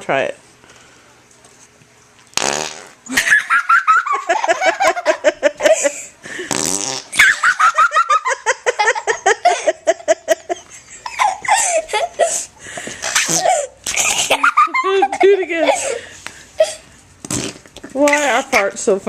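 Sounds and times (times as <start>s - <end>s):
noise putty fart sound: 2.3s - 3.2s, 6.4s - 7.3s, 13.0s - 14.3s, 17.2s - 18.2s
high-pitched giggling laughter: 3.1s - 6.1s, 7.2s - 12.5s, 13.2s - 16.0s.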